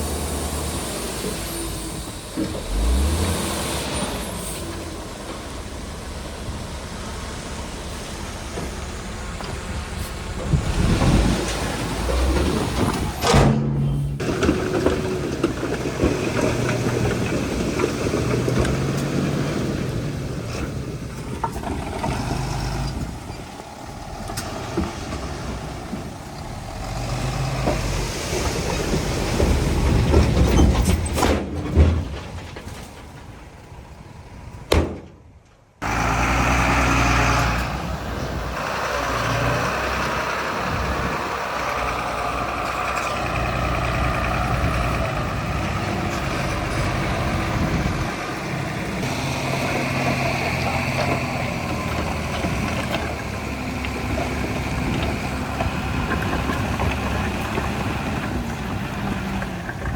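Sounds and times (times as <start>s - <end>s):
diesel earthmoving machinery: 0.0s - 59.9s
metal clanks and knocks: 10.4s - 19.4s, 28.8s - 33.6s.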